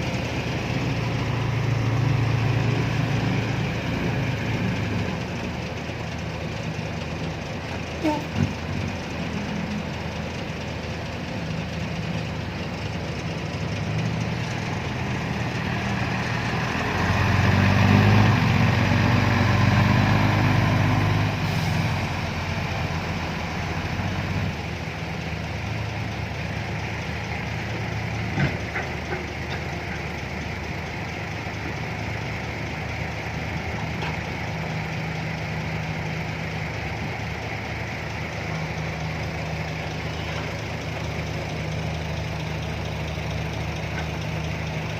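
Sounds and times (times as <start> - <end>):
heavy diesel engines running: 0.0 - 44.9.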